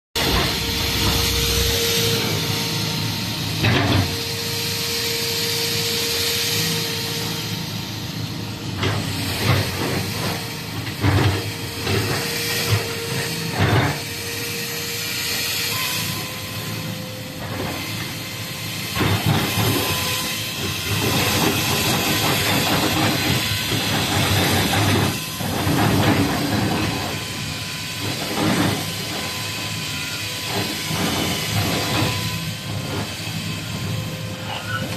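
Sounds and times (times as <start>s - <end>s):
excavator hissing with whine: 0.2s - 34.9s.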